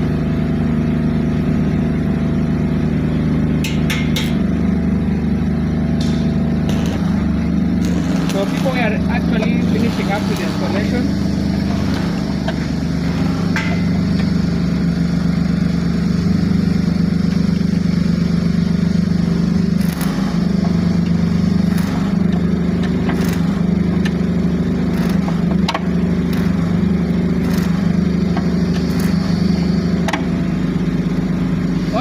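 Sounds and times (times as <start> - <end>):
low engine-like drone: 0.0 - 32.0
sharp clicks and knocks: 3.6 - 4.4, 25.0 - 26.6.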